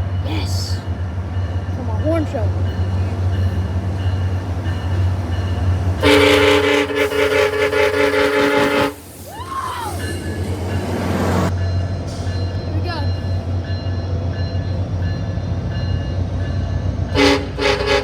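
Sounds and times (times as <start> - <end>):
train air horn blast: 6.0 - 10.2, 17.1 - 18.0.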